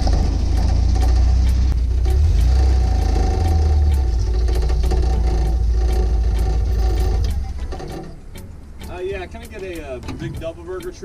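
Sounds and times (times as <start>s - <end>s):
car engine running at low revs: 0.0s - 11.0s.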